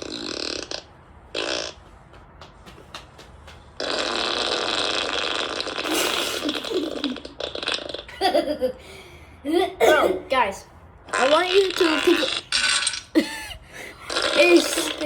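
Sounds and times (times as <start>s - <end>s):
raspy fart sound effect: 0.0s - 1.9s, 3.8s - 8.2s, 11.1s - 13.2s, 14.1s - 15.0s.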